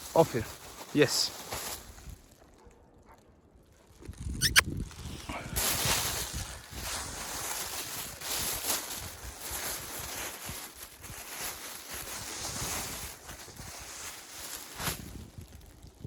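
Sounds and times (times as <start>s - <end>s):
wind buffeting microphone: 4.0s - 9.6s, 14.9s - 16.0s.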